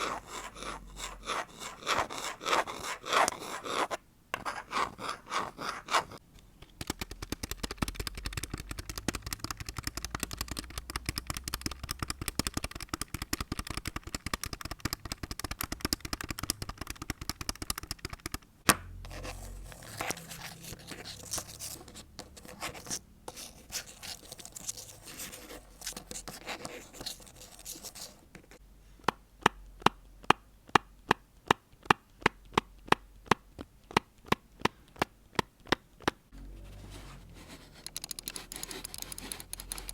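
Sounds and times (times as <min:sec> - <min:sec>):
rapid scratching and tapping: 0:00.0 - 0:18.5, 0:19.1 - 0:28.6, 0:36.9 - 0:39.9
rustling scrape: 0:19.1 - 0:28.6, 0:36.4 - 0:39.9.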